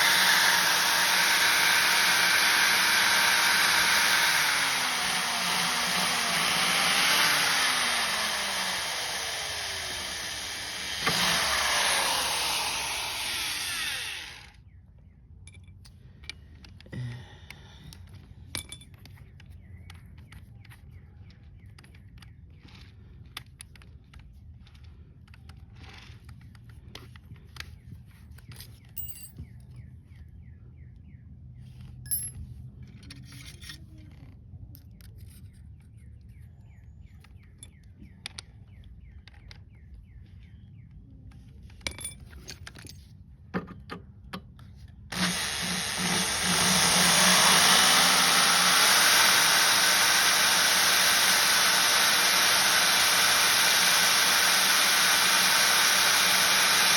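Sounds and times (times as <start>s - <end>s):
power drill whirring: 0.0s - 14.6s, 45.0s - 56.9s.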